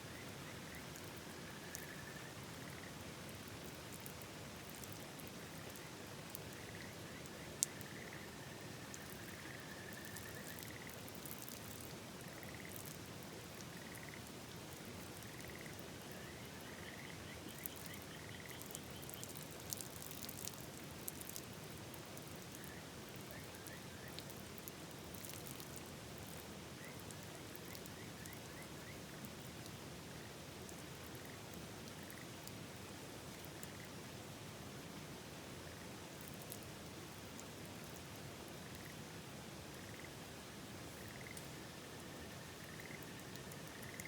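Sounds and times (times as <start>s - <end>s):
frogs calling: 41.0s - 44.0s.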